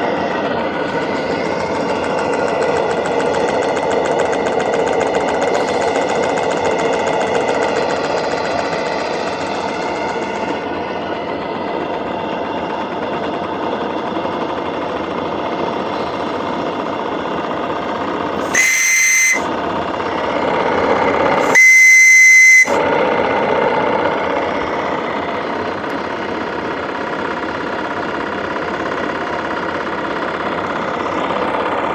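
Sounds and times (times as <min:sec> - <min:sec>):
engine-like running noise: 0:00.0 - 0:31.9
steam whistle blasts: 0:18.4 - 0:19.6, 0:21.3 - 0:22.8.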